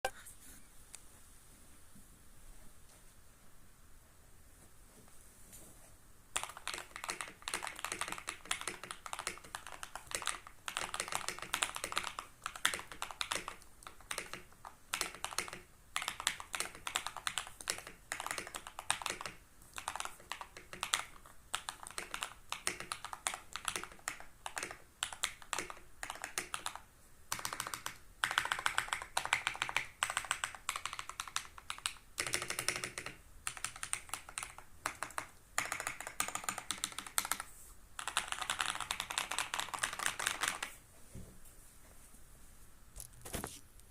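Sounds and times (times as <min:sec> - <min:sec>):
fast typing on mechanical keyboard: 0:06.4 - 0:40.8.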